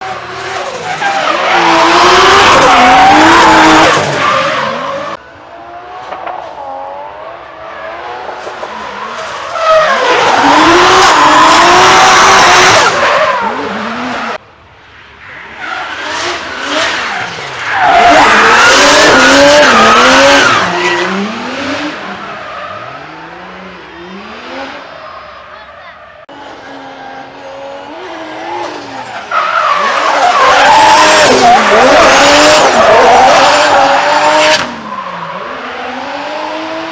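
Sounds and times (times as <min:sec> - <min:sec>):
car engines revving: 0:00.0 - 0:36.9
tyre screech: 0:28.0 - 0:35.7.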